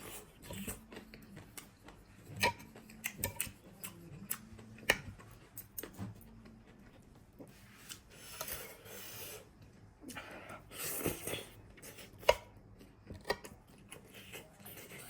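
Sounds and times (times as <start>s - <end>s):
chewing and rustling: 0.0s - 8.1s.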